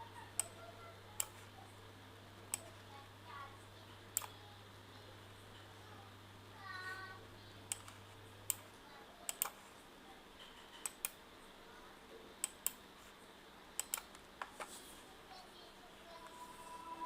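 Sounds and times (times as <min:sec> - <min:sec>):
faint steady hiss: 0:00.0 - 0:17.0
mouse and keyboard clicks: 0:07.7 - 0:08.7, 0:09.3 - 0:09.7, 0:10.4 - 0:11.2, 0:13.8 - 0:14.7.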